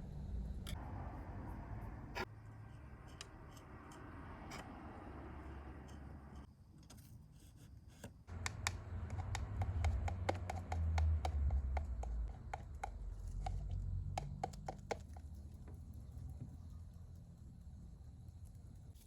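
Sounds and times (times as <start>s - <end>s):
low hum: 0.0s - 6.5s.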